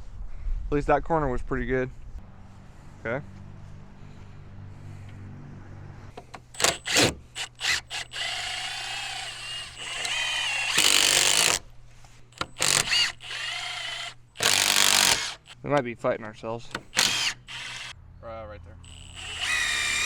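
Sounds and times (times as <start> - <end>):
cordless drill whining: 6.4 - 11.6, 12.3 - 15.6, 16.7 - 18.0, 18.8 - 20.0.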